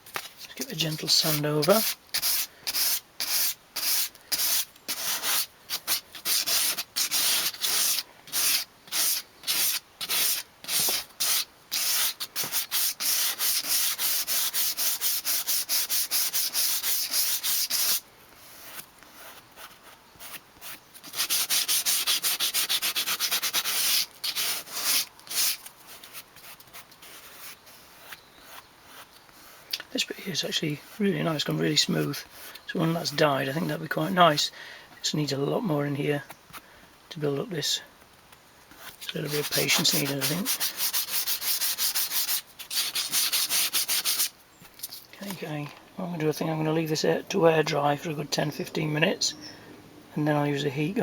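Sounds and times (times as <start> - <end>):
sandpaper rubbing: 0.5 - 29.7, 38.8 - 45.0.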